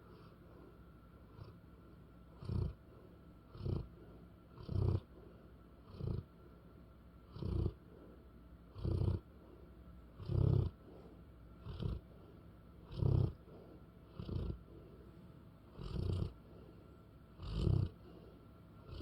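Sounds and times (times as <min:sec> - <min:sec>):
dog snoring: 0:00.0 - 0:01.6, 0:02.3 - 0:06.3, 0:07.2 - 0:09.3, 0:10.2 - 0:15.0, 0:15.7 - 0:16.8, 0:17.4 - 0:19.0.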